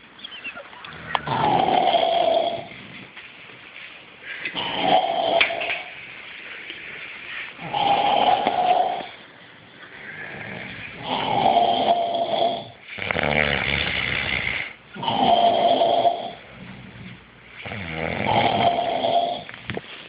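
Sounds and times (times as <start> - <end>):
quiet breathing: 0.9 - 20.0
person snoring loudly: 1.0 - 2.8, 4.5 - 5.8, 7.6 - 9.1, 10.3 - 16.4, 17.6 - 19.5.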